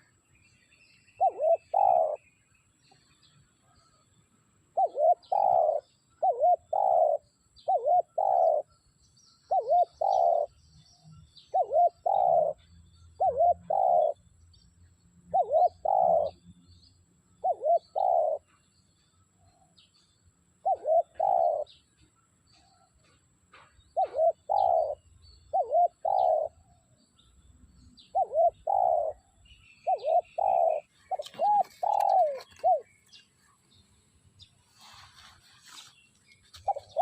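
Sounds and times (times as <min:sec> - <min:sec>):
dove cooing: 0:01.2 - 0:02.2, 0:04.8 - 0:08.7, 0:09.5 - 0:10.5, 0:11.5 - 0:12.6, 0:13.2 - 0:14.2, 0:15.3 - 0:16.4, 0:17.4 - 0:18.4, 0:20.6 - 0:21.8, 0:24.0 - 0:26.6, 0:28.0 - 0:32.9, 0:36.6 - 0:37.0.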